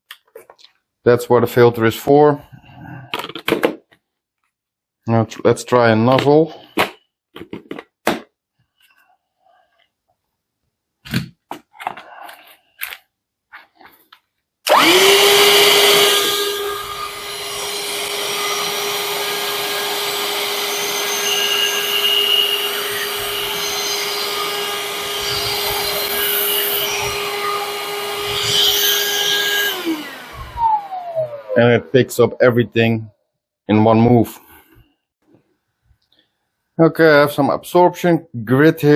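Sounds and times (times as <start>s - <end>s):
handheld vacuum cleaner whining: 14.7s - 31.9s.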